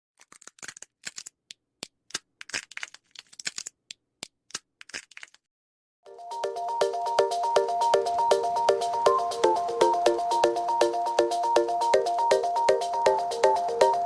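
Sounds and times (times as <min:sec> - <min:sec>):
sharp cracks and clicks: 0:00.2 - 0:05.5
melodic chiming tune: 0:06.1 - 0:14.0.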